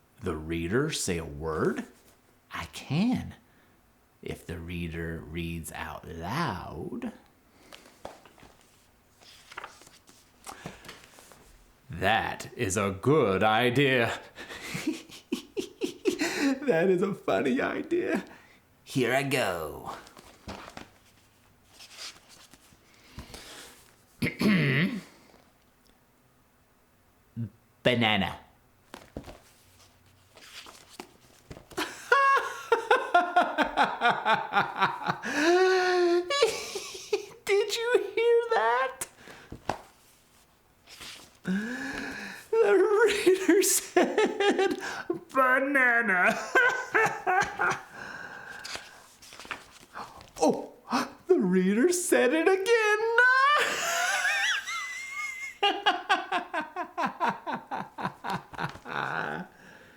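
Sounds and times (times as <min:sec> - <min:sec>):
man laughing: 0:14.1 - 0:18.3, 0:31.8 - 0:38.8, 0:41.5 - 0:48.8, 0:52.4 - 0:59.8.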